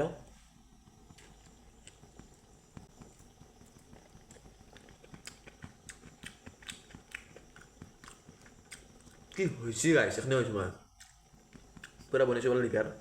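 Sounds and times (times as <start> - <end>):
chewing mouth clicks and smacks: 3.9 - 9.4, 11.0 - 12.1.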